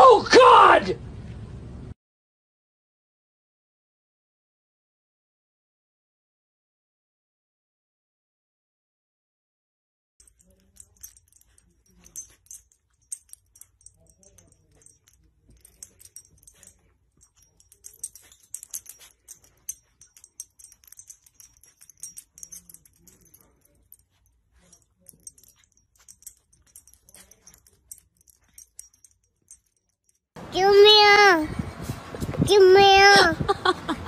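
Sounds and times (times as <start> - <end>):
light clicking and jingling: 10.2 - 31.4.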